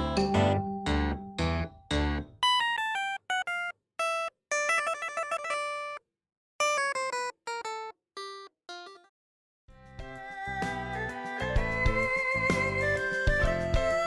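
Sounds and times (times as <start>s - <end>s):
plucked melody: 0.0s - 3.7s.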